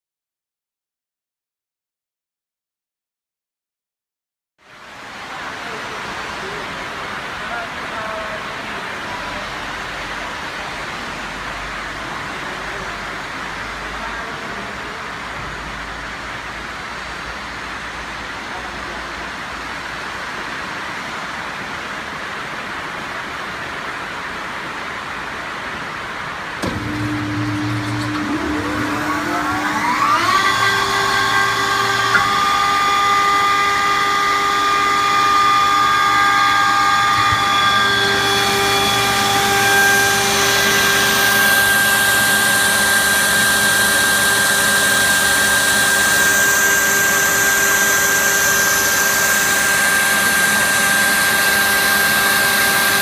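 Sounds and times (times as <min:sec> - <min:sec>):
compressor motor whine: 0:26.6 - 0:53.0.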